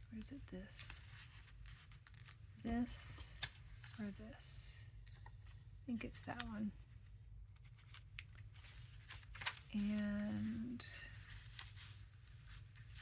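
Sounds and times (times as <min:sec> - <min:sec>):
person speaking: 0:02.6 - 0:05.0, 0:09.6 - 0:11.4.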